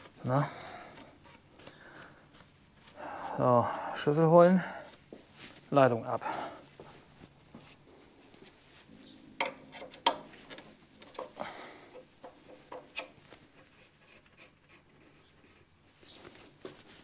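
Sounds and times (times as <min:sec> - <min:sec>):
hand tools clicking and scraping: 0:09.4 - 0:15.6.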